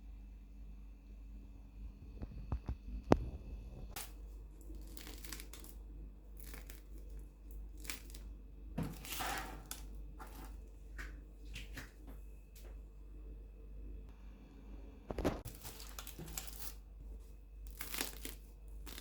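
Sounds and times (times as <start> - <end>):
bread crust crunching: 2.6 - 12.0, 15.1 - 19.0.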